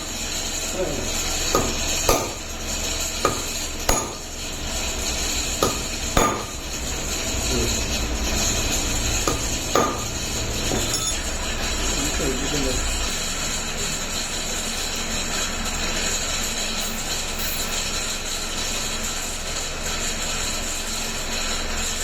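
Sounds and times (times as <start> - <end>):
steady low hum: 0.0 - 13.1
metal tools clinking on metal: 9.3 - 11.5.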